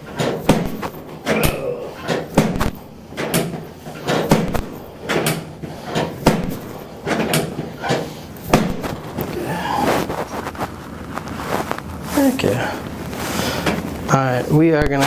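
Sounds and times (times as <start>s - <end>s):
treatment table dull thuds: 0.0s - 10.3s.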